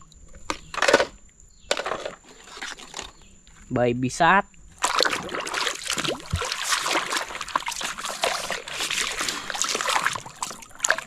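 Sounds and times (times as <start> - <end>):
water splashing and trickling: 4.7 - 11.0.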